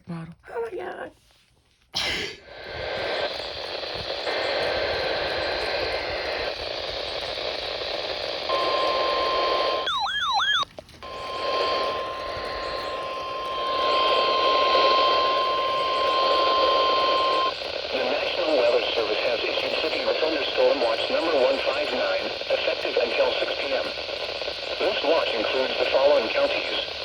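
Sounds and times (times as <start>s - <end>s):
radio static hiss: 2.4s - 27.0s
warbling electronic tone: 8.6s - 17.5s.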